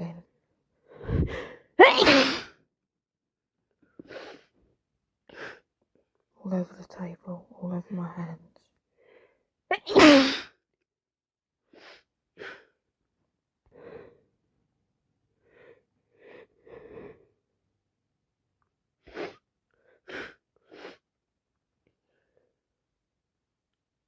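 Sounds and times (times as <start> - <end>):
person sneezing: 1.8 - 2.6, 9.7 - 10.5
sniffing through runny nose: 4.0 - 4.5, 11.7 - 12.7, 19.0 - 21.0.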